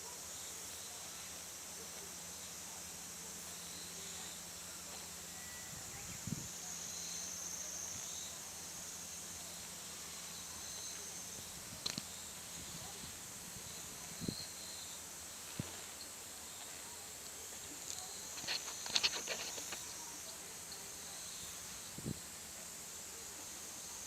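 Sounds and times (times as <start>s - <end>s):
insects chirring: 0.0s - 24.0s.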